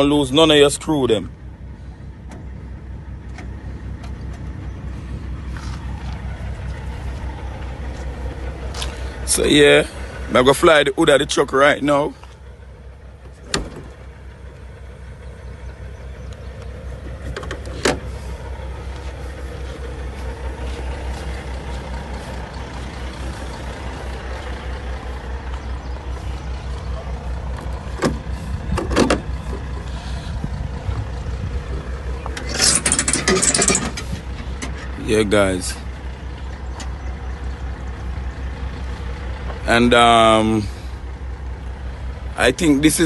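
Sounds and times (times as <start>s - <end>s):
truck engine idling: 0.0s - 43.0s
hood knocks and clanks: 16.5s - 23.2s, 26.7s - 29.9s.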